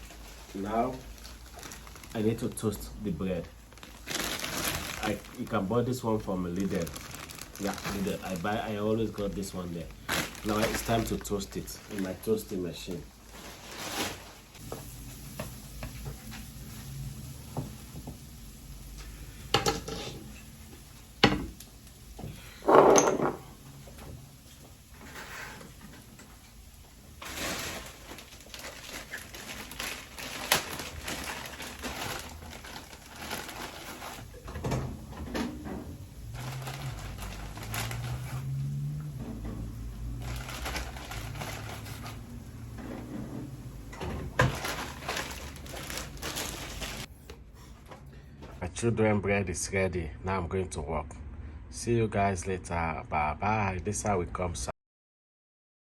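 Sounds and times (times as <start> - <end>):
kitchen items knocking and clinking: 22.6 - 23.5.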